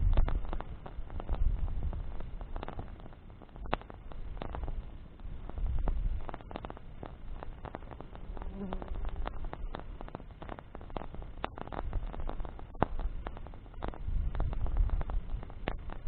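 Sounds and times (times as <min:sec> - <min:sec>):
campfire crackling and popping: 0:00.0 - 0:16.0.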